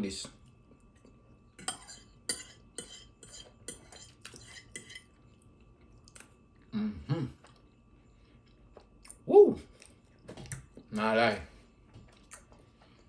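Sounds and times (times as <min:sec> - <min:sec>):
cutlery scraping on plate: 0:01.6 - 0:05.1.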